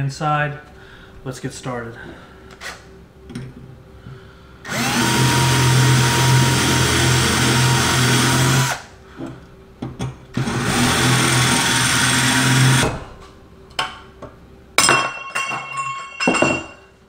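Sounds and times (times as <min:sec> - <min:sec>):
power drill running: 0:04.6 - 0:08.9, 0:10.3 - 0:12.8
ringing metal clinks: 0:14.8 - 0:17.0.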